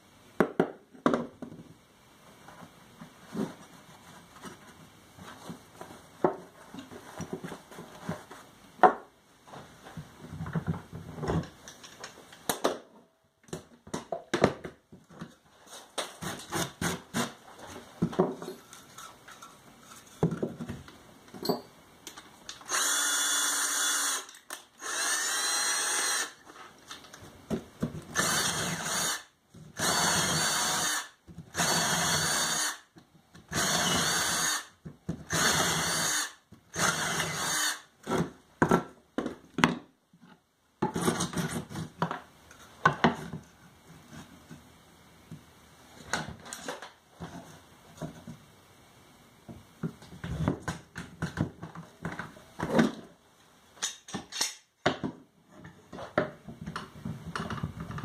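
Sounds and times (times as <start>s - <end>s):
power drill bursts: 22.7s - 26.4s, 28.2s - 32.8s, 33.5s - 34.7s, 35.3s - 37.9s.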